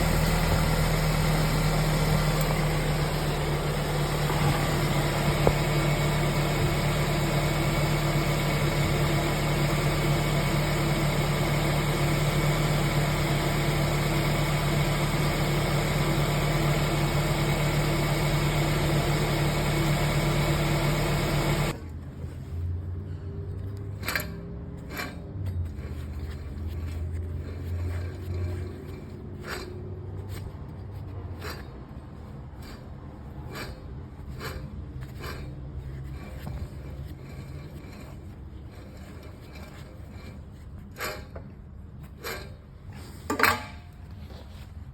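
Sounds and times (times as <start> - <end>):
car engine and road noise: 0.0 - 40.9.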